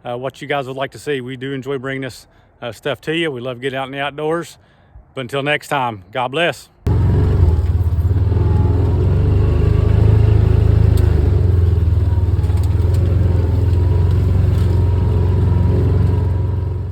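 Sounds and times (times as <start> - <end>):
vehicle engine droning: 6.9 - 16.9.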